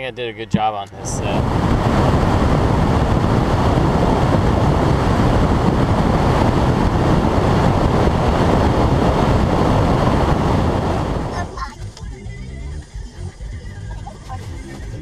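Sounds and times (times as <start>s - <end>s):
car road and wind noise: 0.0s - 15.0s.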